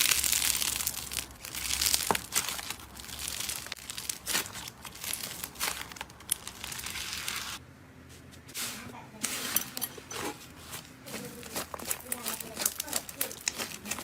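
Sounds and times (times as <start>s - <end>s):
slime crackling and popping: 0.0s - 7.6s, 11.1s - 14.0s.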